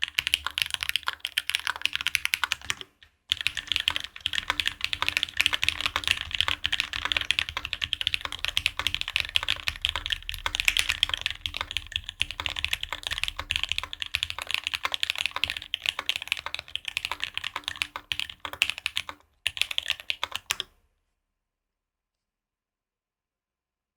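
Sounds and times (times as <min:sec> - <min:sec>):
mechanical keyboard typing: 0:00.0 - 0:20.7.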